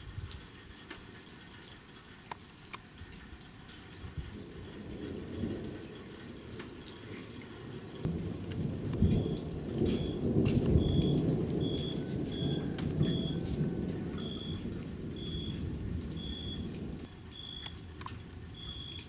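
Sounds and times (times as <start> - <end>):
rain falling and dripping: 0.0 - 19.0
thunder rumbling: 4.0 - 19.0.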